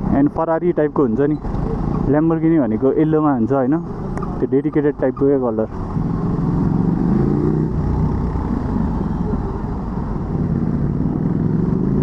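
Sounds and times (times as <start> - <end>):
road and wind noise: 0.0 - 12.0
motorcycle engine running: 5.8 - 12.0.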